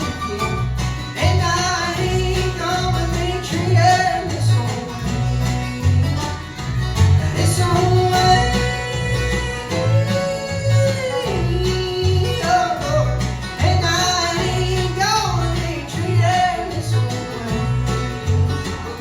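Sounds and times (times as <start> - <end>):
fiddle: 0.0 - 3.9
bass notes: 0.0 - 19.0
bluegrass band playing: 0.0 - 19.0
guitar: 0.0 - 19.0.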